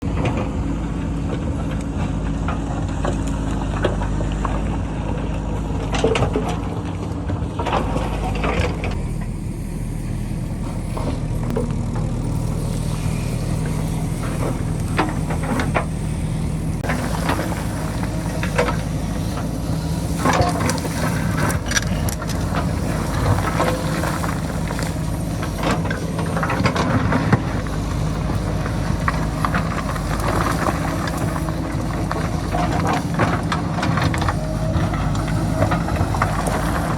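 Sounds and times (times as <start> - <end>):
diesel engine running: 0.0 - 36.9
rocks and stones falling: 16.8 - 36.9.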